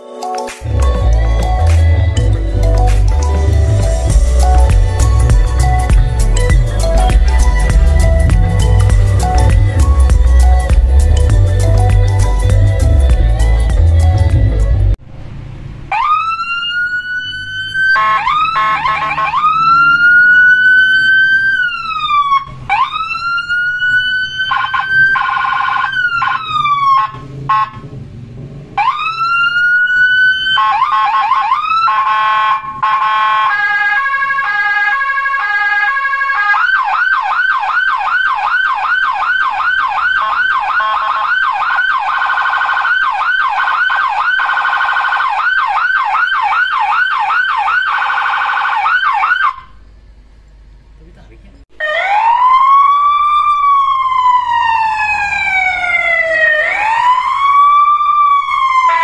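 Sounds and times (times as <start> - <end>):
siren wailing: 15.9 - 27.8, 28.8 - 49.8, 51.8 - 59.0
siren warbles: 15.9 - 27.8, 51.8 - 59.0
siren yelp: 15.9 - 27.8, 28.8 - 49.8, 51.8 - 59.0
two-tone hi-lo siren: 15.9 - 27.8, 28.8 - 49.8, 51.8 - 59.0.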